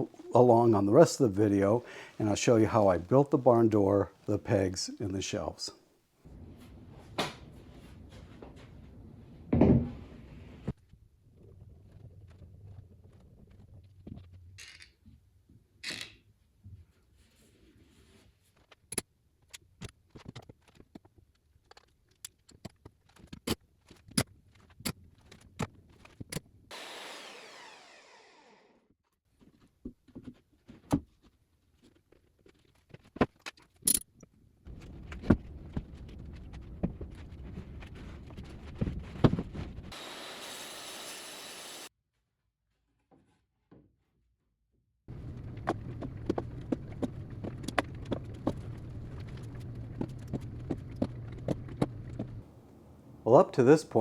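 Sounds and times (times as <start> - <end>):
steady running noise: 26.7 - 28.6.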